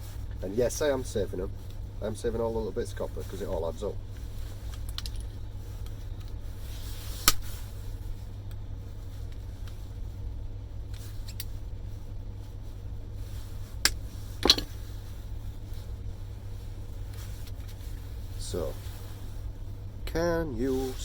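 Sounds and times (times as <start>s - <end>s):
steady low hum: 0.0s - 21.0s
metal parts clicking and snapping: 4.7s - 5.3s.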